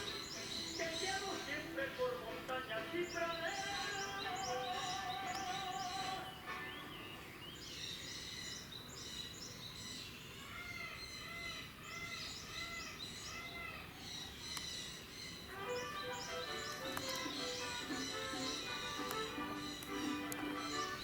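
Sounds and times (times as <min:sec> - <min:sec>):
evenly spaced arching bird notes: 0:00.0 - 0:21.0
low background hiss: 0:00.0 - 0:21.0
small birds chirping: 0:00.0 - 0:21.0.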